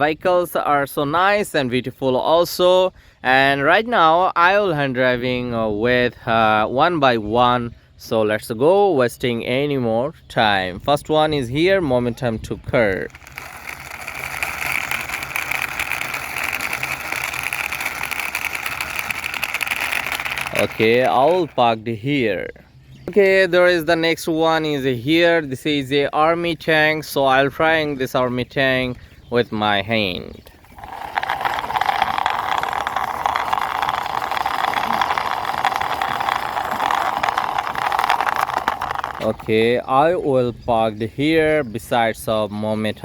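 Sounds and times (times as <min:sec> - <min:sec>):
toy vehicle clicking rattle: 0:12.8 - 0:21.7, 0:30.4 - 0:39.8.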